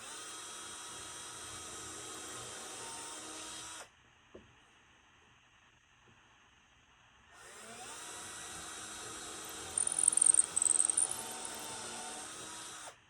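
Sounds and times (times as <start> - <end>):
power drill spinning: 9.8 - 11.6.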